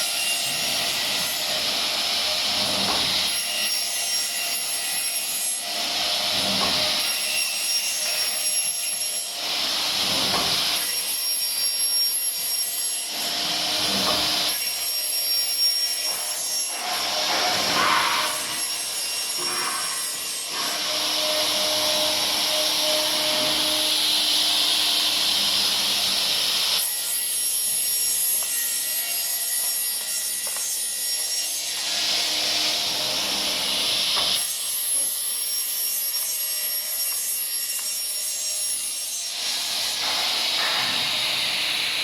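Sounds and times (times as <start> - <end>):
router spindle cutting wood: 13.1 - 27.2.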